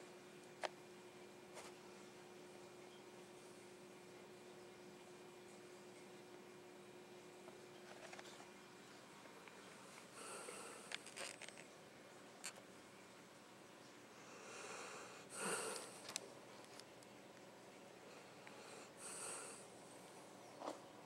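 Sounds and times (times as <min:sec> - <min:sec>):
dog snoring softly: 0:10.0 - 0:11.4, 0:14.2 - 0:16.0, 0:18.2 - 0:19.7.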